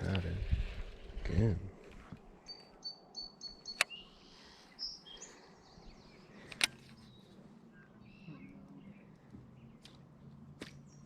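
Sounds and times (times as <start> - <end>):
small birds chirping: 2.1 - 11.0
sharp clicks: 3.7 - 4.0, 6.4 - 7.0.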